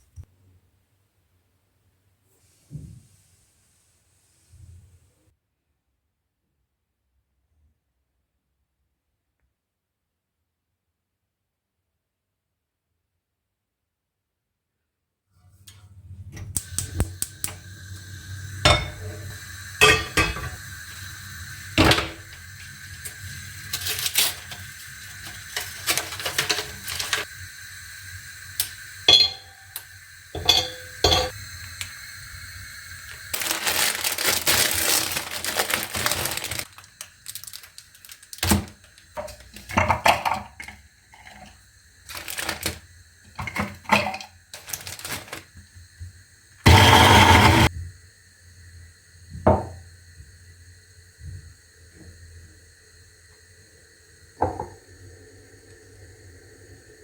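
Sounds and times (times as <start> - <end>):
pots and utensils clinking: 18.6 - 21.0, 21.7 - 27.3, 28.6 - 31.4, 38.4 - 42.8, 43.4 - 45.4, 46.7 - 47.7.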